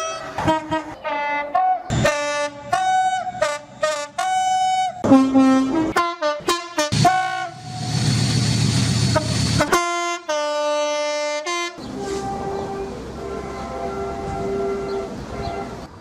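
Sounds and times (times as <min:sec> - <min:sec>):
train two-tone horn blasts: 0:00.0 - 0:07.9, 0:09.1 - 0:15.8
train rumble: 0:06.9 - 0:10.5, 0:11.8 - 0:16.0.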